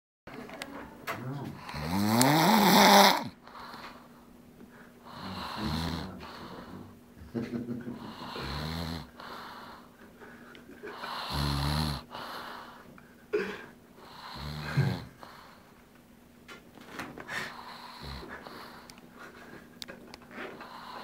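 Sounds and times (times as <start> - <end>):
person snoring: 1.6 - 3.4, 5.1 - 6.9, 7.9 - 9.8, 10.9 - 12.8, 14.0 - 15.4, 17.5 - 18.9.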